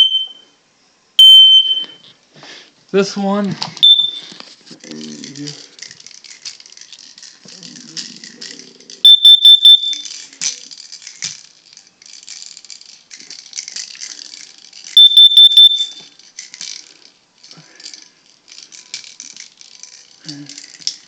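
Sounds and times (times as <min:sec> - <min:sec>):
smoke detector shrill beeps: 0:00.0 - 0:00.5, 0:01.2 - 0:02.0, 0:03.8 - 0:04.3, 0:09.0 - 0:10.1, 0:15.0 - 0:16.1
steady rattle: 0:04.6 - 0:09.2, 0:10.0 - 0:21.0.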